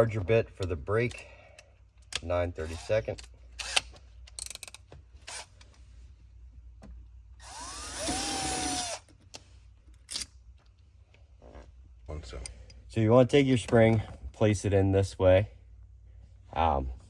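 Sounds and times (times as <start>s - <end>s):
power drill drilling through metal: 7.4s - 9.0s.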